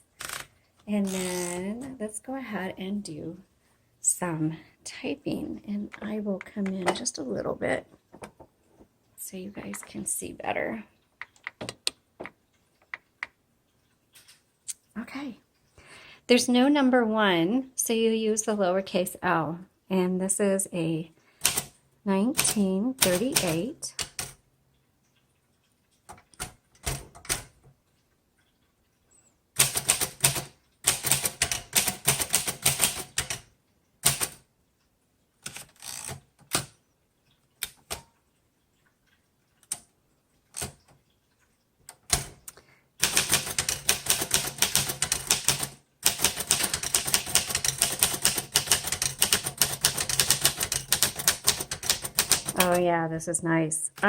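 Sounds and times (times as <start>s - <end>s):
typewriter typing clacks: 21.4s - 21.7s, 22.3s - 24.4s, 29.6s - 34.4s, 43.0s - 52.8s.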